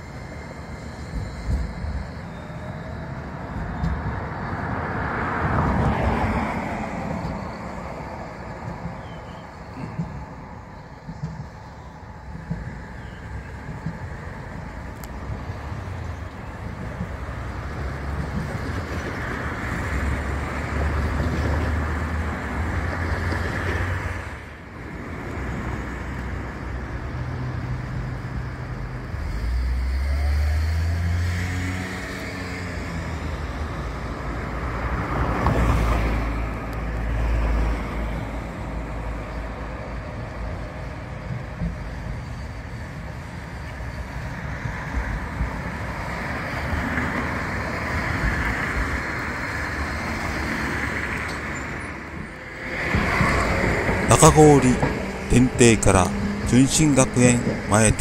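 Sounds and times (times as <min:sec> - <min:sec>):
motor vehicles passing: 0:29.2 - 0:38.5, 0:50.7 - 0:58.0
engine note rising: 0:52.4 - 0:58.0.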